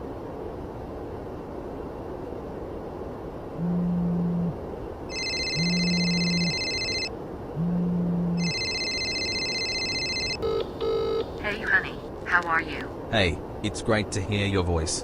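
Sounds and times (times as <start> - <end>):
low pulsing buzz: 3.4 - 13.1
electronic phone ringtone: 5.1 - 7.1, 8.4 - 11.4.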